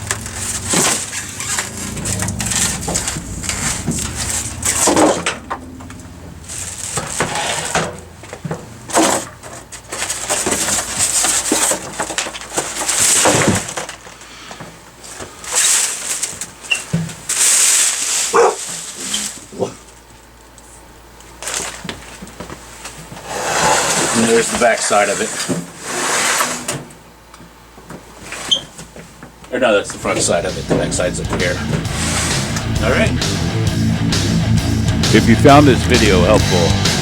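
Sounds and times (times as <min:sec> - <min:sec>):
packaging rustling and crinkling: 0:15.0 - 0:20.0, 0:21.3 - 0:23.0.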